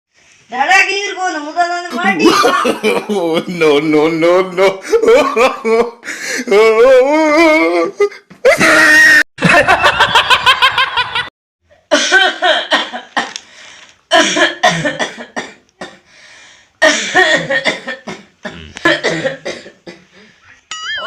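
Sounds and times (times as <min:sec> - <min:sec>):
man coughing harshly: 0:14.1 - 0:16.0, 0:16.8 - 0:20.1.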